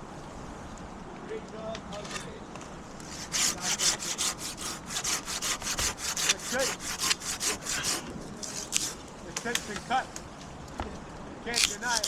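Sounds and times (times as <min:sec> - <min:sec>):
hand saw cutting branch: 0:03.0 - 0:09.8, 0:11.5 - 0:12.0.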